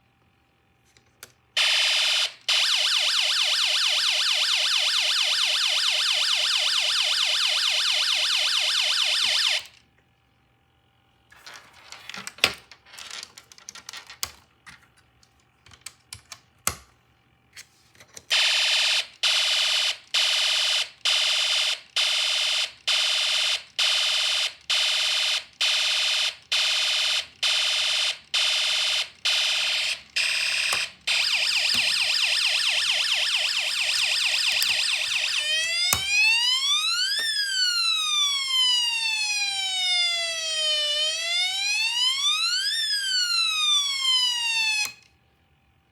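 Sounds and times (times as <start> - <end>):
siren-like sweeping tone: 1.6 - 9.7, 22.5 - 45.0
scattered clicks: 29.3 - 36.2.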